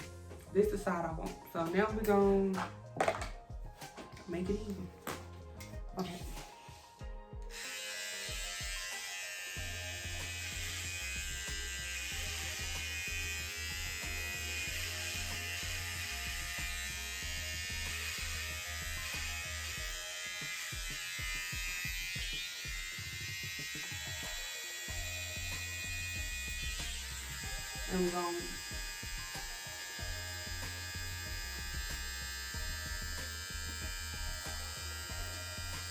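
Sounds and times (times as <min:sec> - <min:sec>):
background music: 0:00.0 - 0:35.9
electric hair clippers buzzing: 0:07.4 - 0:35.9.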